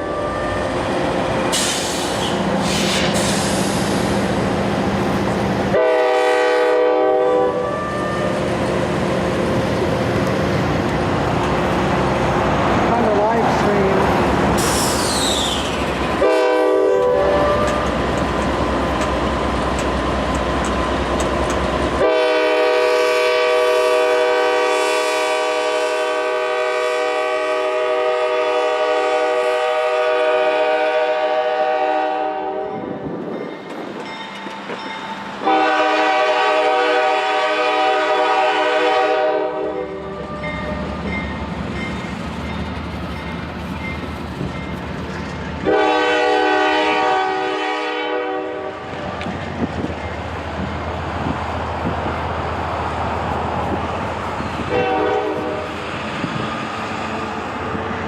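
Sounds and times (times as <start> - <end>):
passing train rumble: 0.0 - 58.0
locomotive air horn blasts: 5.7 - 8.4, 16.2 - 17.9, 22.0 - 32.9, 35.4 - 40.6, 45.6 - 48.9, 54.7 - 55.8.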